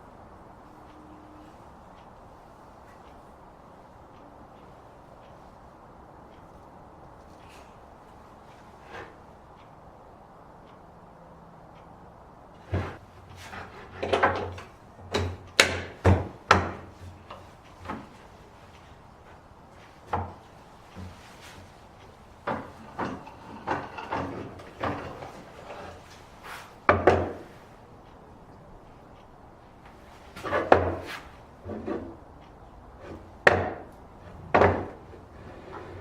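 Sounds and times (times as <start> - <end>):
wooden knocks and clatter: 12.6 - 18.2, 22.4 - 26.0, 26.9 - 27.5, 30.4 - 32.2, 33.0 - 36.0.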